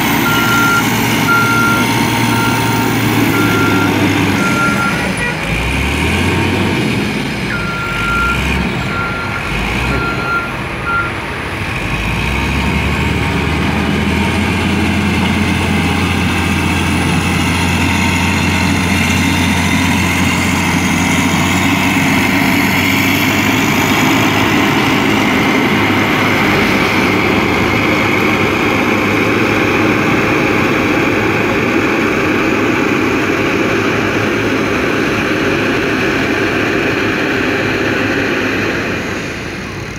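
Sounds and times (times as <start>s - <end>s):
reversing alarm beeping: 0.0s - 5.2s, 7.5s - 11.2s
diesel construction machinery running: 0.0s - 39.9s.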